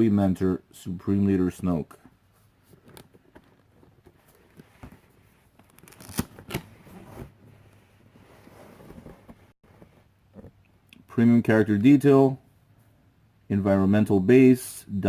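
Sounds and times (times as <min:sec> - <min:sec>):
cardboard box scrapes and clicks: 0:08.2 - 0:10.0.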